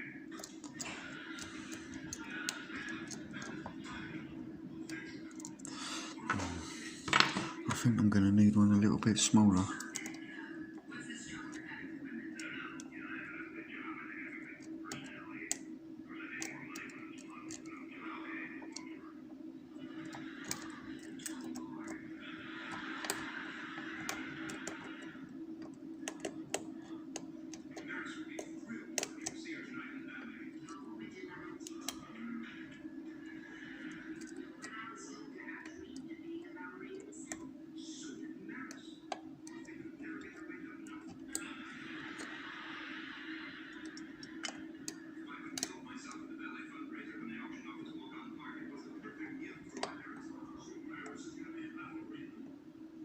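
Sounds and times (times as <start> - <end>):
steady low hum: 0.0 - 53.0.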